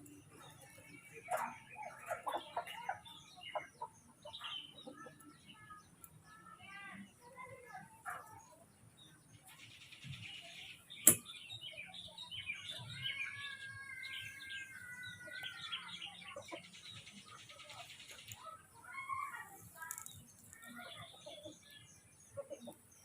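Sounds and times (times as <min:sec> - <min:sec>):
sharp click: 0:11.0 - 0:11.2.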